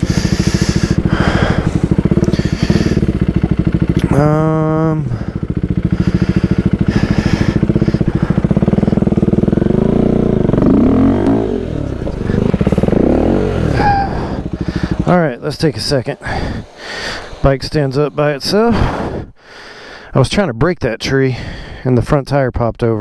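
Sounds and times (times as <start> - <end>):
motorcycle engine pulsing and revving: 0.0 - 19.4.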